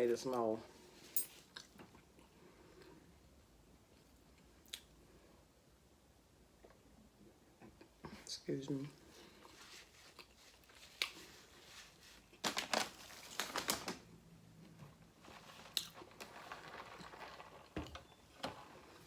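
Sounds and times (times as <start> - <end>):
food packaging crinkling: 9.3 - 14.1, 15.1 - 19.0.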